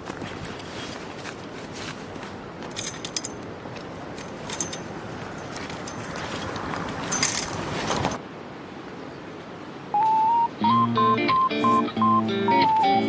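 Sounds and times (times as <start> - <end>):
background hiss: 0.2 - 13.0
metallic clinks of gear handled: 2.6 - 7.6.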